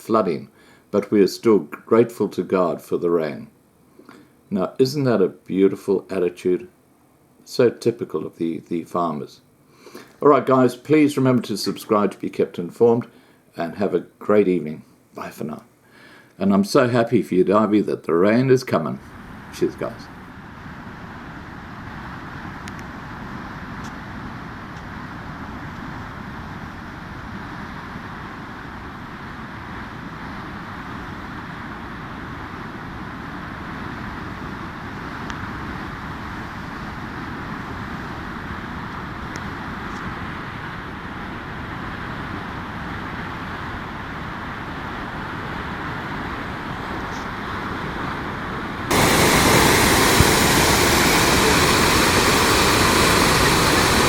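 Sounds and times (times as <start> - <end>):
river rushing: 48.9 - 54.0.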